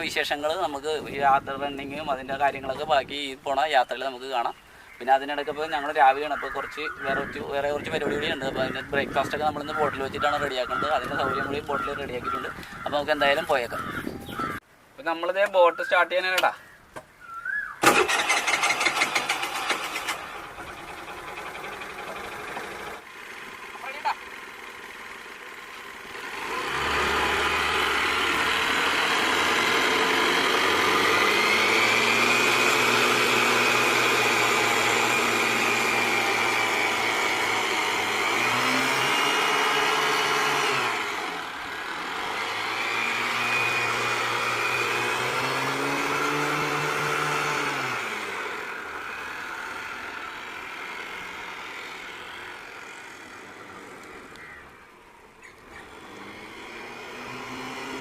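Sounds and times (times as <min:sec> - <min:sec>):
scooter engine running: 0:17.8 - 0:58.0.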